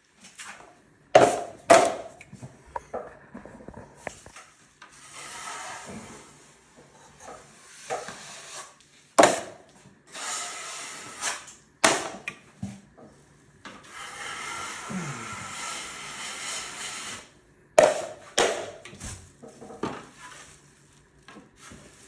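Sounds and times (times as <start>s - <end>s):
drywall knife scraping compound: 3.1s - 12.2s, 13.6s - 22.0s.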